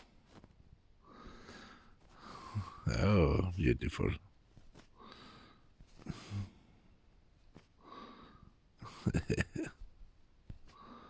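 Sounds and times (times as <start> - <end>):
person breathing slowly: 1.0 - 2.8, 4.9 - 7.0, 7.7 - 9.0, 10.6 - 11.0.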